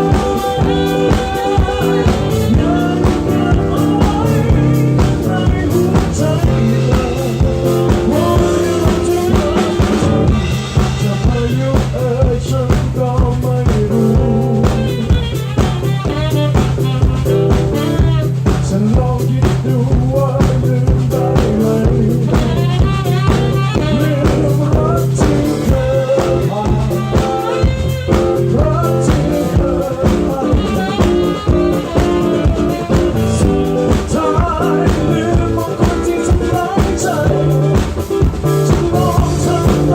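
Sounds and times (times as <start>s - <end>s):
wavering melodic lead line: 0.0s - 18.9s
bass: 0.0s - 39.9s
drum kit beat: 0.0s - 39.9s.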